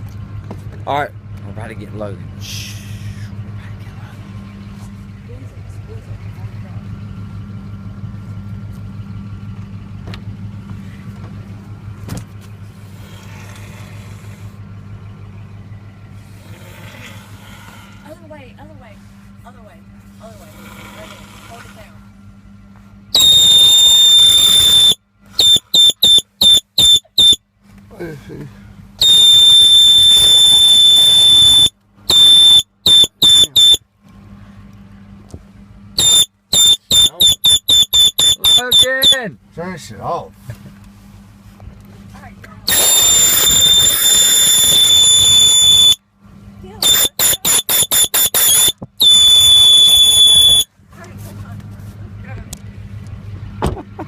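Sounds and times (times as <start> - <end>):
steady low motor hum: 0.0 - 54.0
air horn blasts: 23.2 - 27.4, 29.0 - 33.8, 36.0 - 39.2, 42.7 - 46.0, 46.8 - 50.7.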